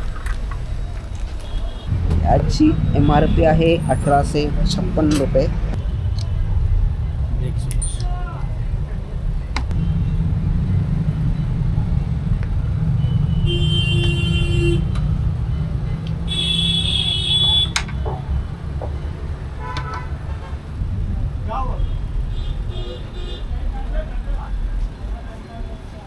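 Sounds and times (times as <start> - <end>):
road traffic rumble: 0.0 - 26.0
car horn toots: 13.0 - 14.9, 16.3 - 18.1, 19.6 - 20.6.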